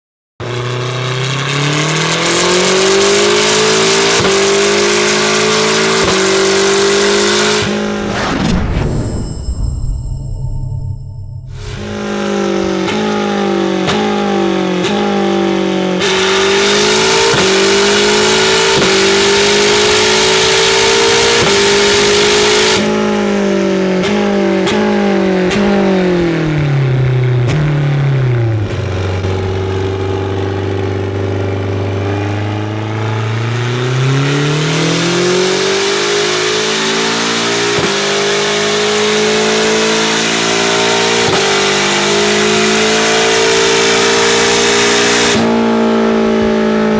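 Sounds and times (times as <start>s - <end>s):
race car engine revving: 0.4s - 9.3s, 11.5s - 46.9s.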